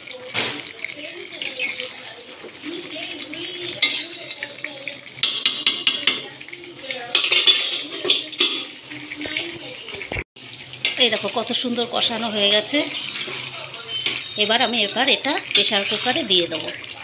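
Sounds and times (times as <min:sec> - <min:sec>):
metal spoon scraping a pot: 0:00.6 - 0:02.2, 0:03.6 - 0:06.1, 0:15.5 - 0:16.6.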